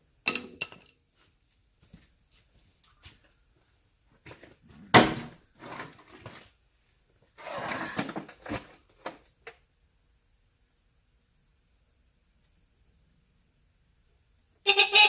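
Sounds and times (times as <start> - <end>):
parts scraping and knocking: 5.2 - 6.5.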